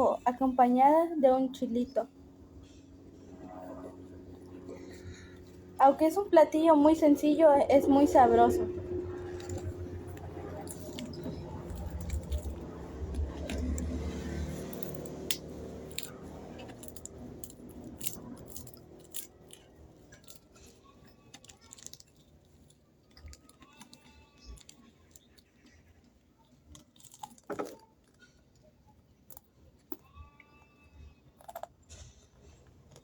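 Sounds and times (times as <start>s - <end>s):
low vehicle hum: 0.0s - 20.8s
person chewing: 8.6s - 30.3s, 31.4s - 33.0s.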